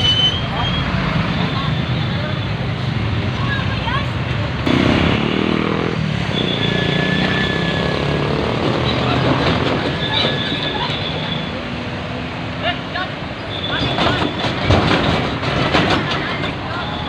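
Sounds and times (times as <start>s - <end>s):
wheels squealing: 0.0s - 4.1s, 6.1s - 11.9s, 12.6s - 17.0s
train wheels rumbling on rails: 2.6s - 12.3s, 13.2s - 17.0s.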